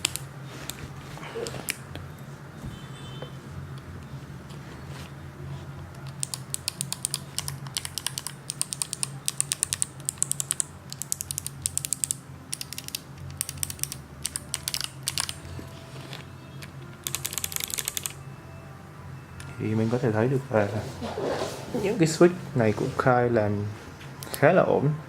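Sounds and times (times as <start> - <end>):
mechanical keyboard typing: 0.0 - 0.3, 6.0 - 15.4, 17.0 - 18.2.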